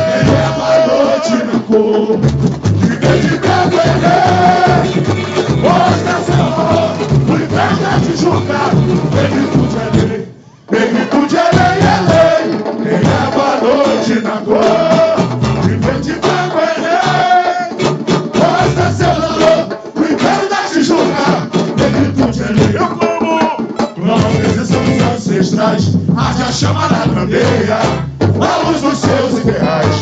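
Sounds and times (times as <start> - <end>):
samba percussion: 0.0 - 30.0
voices singing: 0.0 - 30.0
crowd voices: 2.8 - 25.8.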